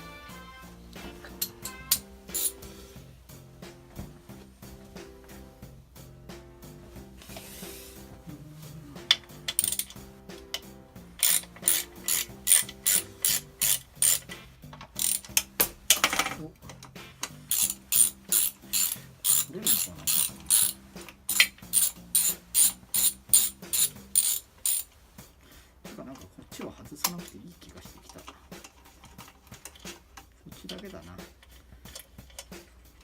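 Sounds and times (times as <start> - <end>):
ratchet wrench clicking: 1.4 - 2.6, 9.1 - 25.0, 28.6 - 33.0.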